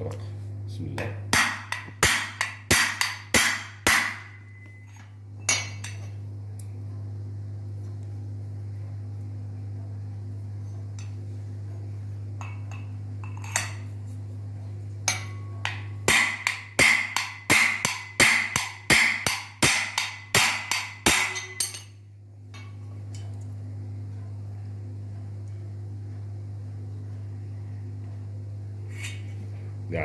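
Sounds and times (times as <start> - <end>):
hammer striking metal bearing: 1.0 - 6.1, 15.1 - 21.9.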